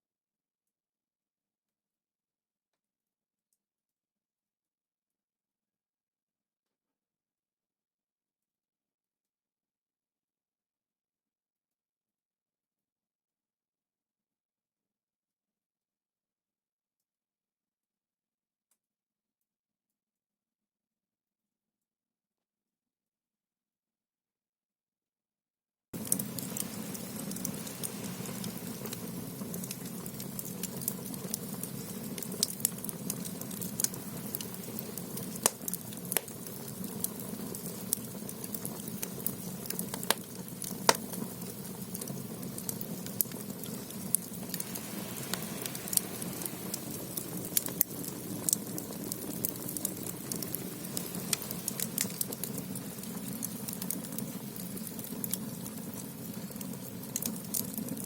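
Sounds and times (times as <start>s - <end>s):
low rush of fire: 26.0s - 37.0s, 43.2s - 54.6s
firewood crackling and popping: 26.0s - 58.0s.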